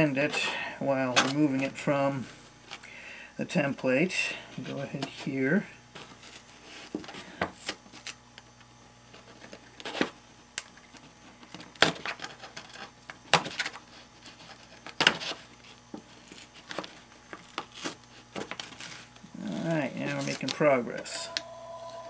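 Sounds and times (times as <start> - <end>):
paper peeling rustles: 12.0 - 20.6.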